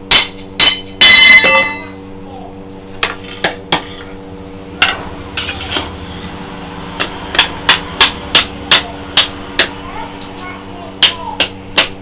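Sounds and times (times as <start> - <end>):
hammer striking steel blade: 0.0 - 2.0, 7.0 - 10.4, 11.0 - 12.0
steady low hum: 0.0 - 12.0.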